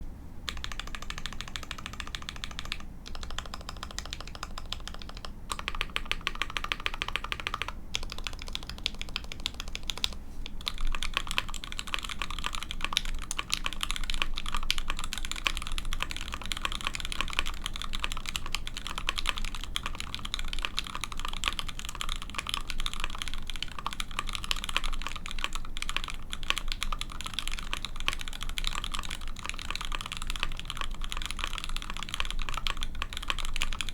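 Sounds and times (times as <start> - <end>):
typing on mechanical keyboard: 0.5 - 33.9.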